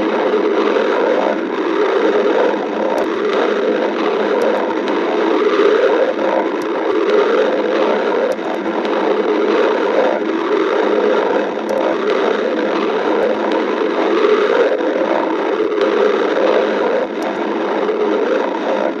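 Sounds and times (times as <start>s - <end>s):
stomach growling: 0.0s - 19.0s
faint clicks: 2.4s - 18.9s.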